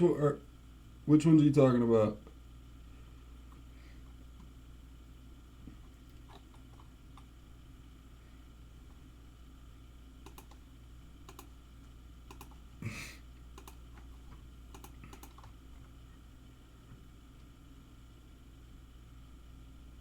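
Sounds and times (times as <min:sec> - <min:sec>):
low steady hum: 0:00.0 - 0:20.0
computer keyboard clicks: 0:10.2 - 0:10.6, 0:11.2 - 0:11.5, 0:12.3 - 0:12.6, 0:13.6 - 0:14.1, 0:14.7 - 0:15.6.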